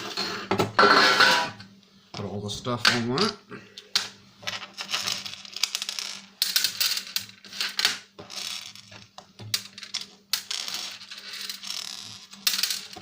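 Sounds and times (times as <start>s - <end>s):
metal parts clinking and scraping: 4.4s - 13.0s.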